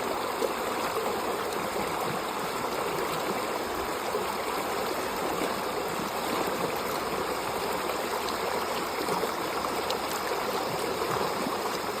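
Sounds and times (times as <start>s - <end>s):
water running over rocks: 0.0s - 12.0s.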